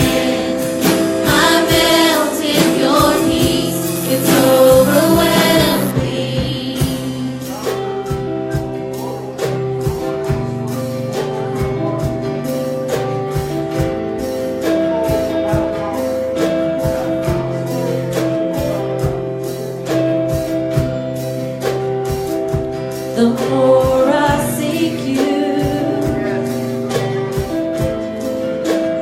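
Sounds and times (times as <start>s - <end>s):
people singing: 0.0s - 8.3s, 23.2s - 27.0s
held keyboard chords: 0.0s - 29.0s
steady drum beat: 0.0s - 29.0s.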